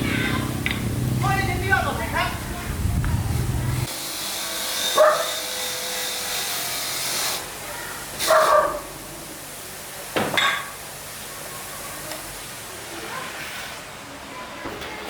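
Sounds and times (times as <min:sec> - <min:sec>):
dog barking: 0:04.9 - 0:05.4, 0:08.2 - 0:08.9.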